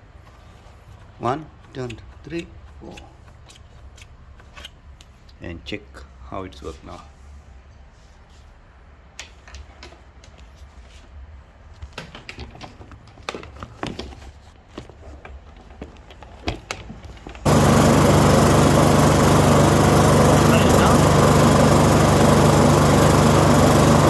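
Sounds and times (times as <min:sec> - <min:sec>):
lawn mower engine running: 0:17.5 - 0:24.0.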